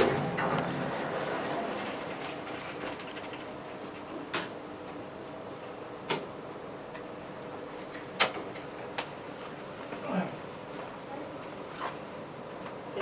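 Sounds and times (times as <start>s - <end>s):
elevator hum: 0.0s - 3.9s.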